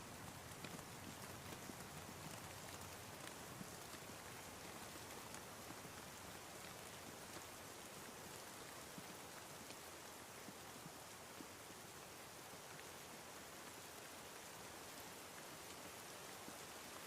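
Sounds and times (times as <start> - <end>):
faint steady rain: 0.0 - 17.0
raindrops ticking: 0.1 - 7.8.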